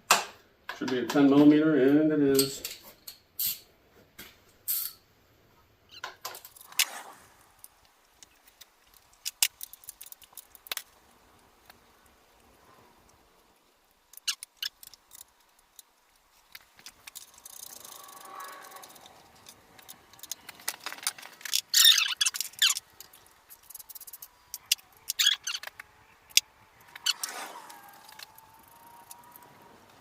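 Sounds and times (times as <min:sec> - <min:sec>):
hand tools and parts clattering: 0:04.2 - 0:05.0, 0:14.2 - 0:28.4.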